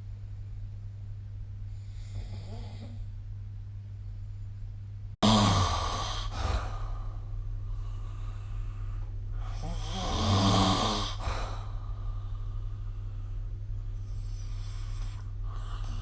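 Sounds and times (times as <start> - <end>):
steady low hum: 0.0 - 16.0
person snoring: 1.8 - 3.0, 5.2 - 7.2, 9.4 - 12.9.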